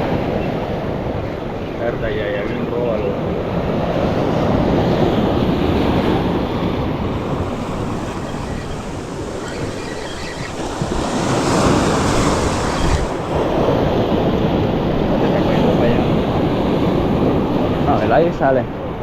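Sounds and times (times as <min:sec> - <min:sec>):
wind buffeting microphone: 0:03.2 - 0:18.2
ocean surf washing in: 0:03.5 - 0:18.3.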